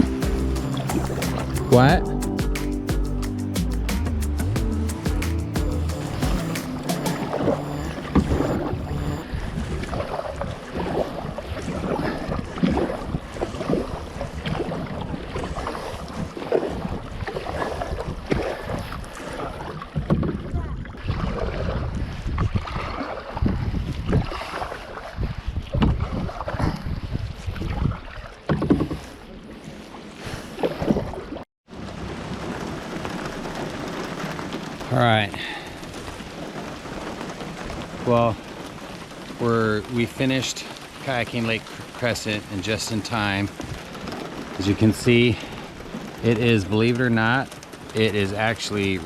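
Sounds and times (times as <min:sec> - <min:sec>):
paddle splashing in water: 0:06.0 - 0:34.9
wind buffeting microphone: 0:08.2 - 0:28.9.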